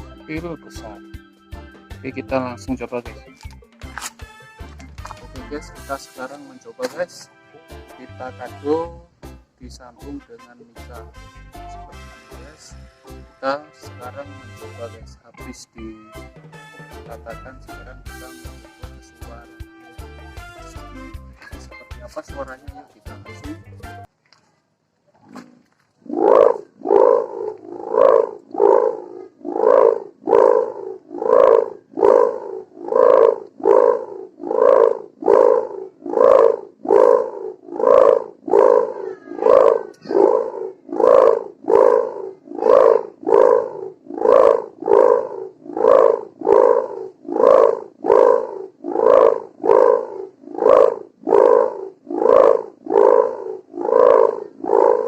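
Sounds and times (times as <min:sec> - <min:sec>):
kite hummer buzzing drone: 0:27.9 - 0:45.2, 0:45.8 - 0:46.8, 0:49.0 - 0:50.0, 0:50.6 - 0:55.0.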